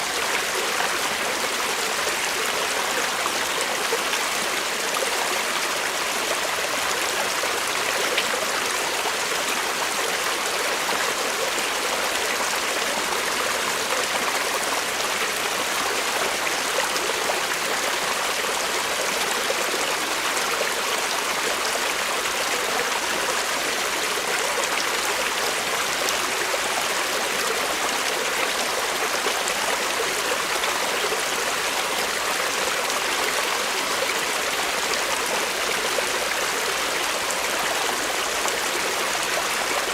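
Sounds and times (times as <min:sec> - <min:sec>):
creek running over stones: 0:00.0 - 0:39.9.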